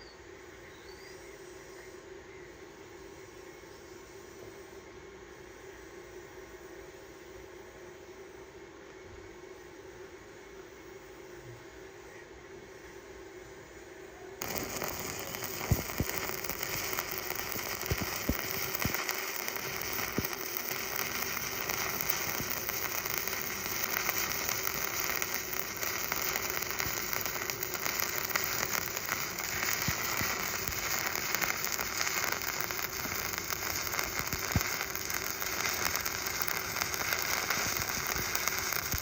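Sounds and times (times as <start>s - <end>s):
welding arc crackling hiss: 14.4s - 39.0s
welding arc popping: 14.4s - 39.0s.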